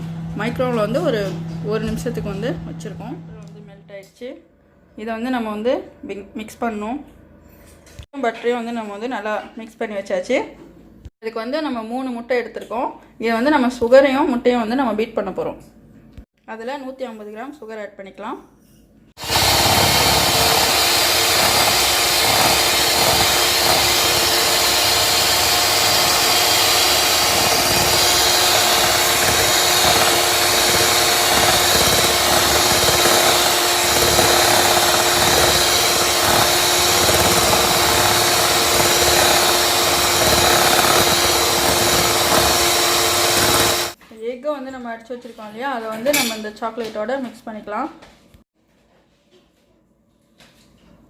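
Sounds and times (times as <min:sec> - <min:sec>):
electric mixer beating: 0:19.2 - 0:44.0.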